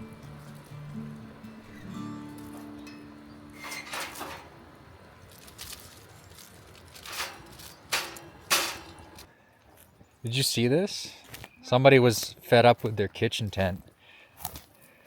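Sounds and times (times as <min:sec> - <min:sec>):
acoustic guitar music: 0:00.0 - 0:05.2
scuffing or crunching noises: 0:05.2 - 0:10.0, 0:14.4 - 0:14.9.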